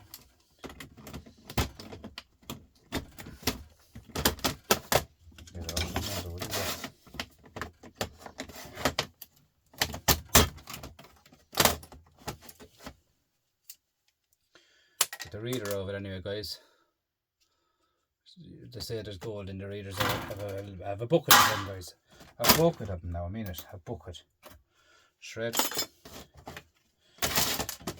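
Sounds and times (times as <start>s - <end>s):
small parts clicking and clattering: 0.0s - 12.7s, 15.0s - 15.9s, 25.5s - 27.9s
scraping: 21.3s - 21.8s.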